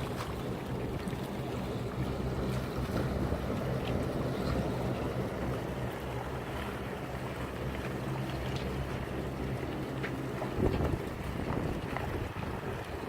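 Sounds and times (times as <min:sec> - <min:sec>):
gusty wind buffeting microphone: 0:10.2 - 0:13.0.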